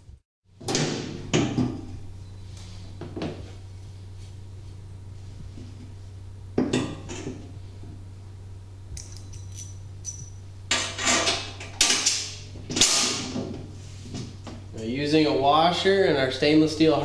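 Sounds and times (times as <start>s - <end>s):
low steady hum: 1.3s - 17.0s
metal parts clanking: 9.0s - 12.1s.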